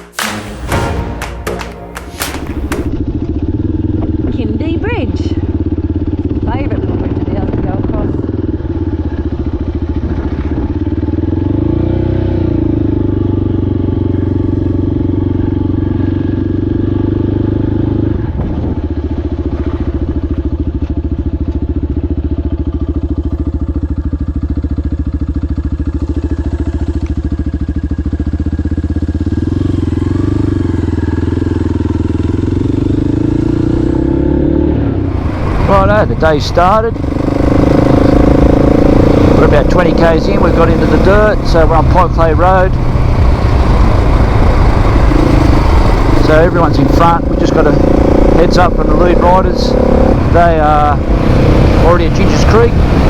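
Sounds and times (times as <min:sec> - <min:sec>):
motorcycle engine running: 0:00.0 - 0:53.0.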